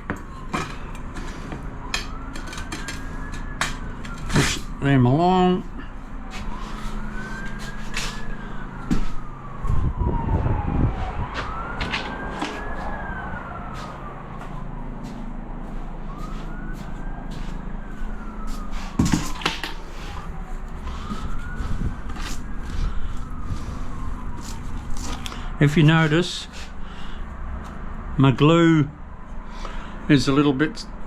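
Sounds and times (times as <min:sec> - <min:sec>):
emergency siren wailing: 0:00.0 - 0:31.0
low rumble: 0:05.6 - 0:18.7.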